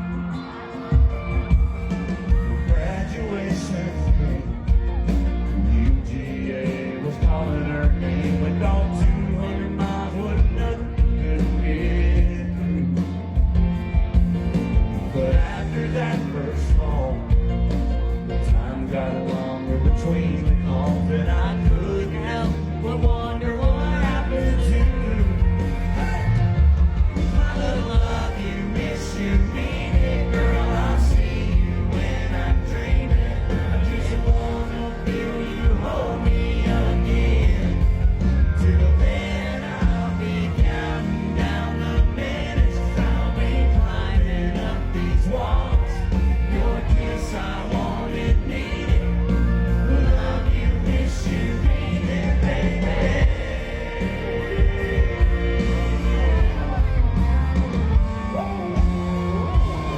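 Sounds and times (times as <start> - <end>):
country-rock band playing: 0.0 - 59.9
person singing: 14.5 - 59.9.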